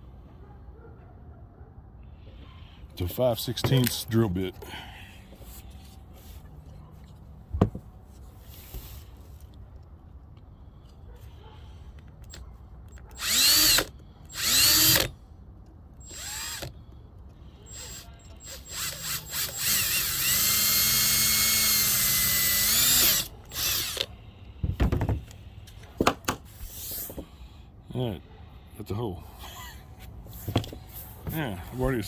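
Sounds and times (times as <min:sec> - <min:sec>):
power drill drilling metal: 0:13.1 - 0:15.2, 0:16.0 - 0:16.8, 0:17.7 - 0:24.1.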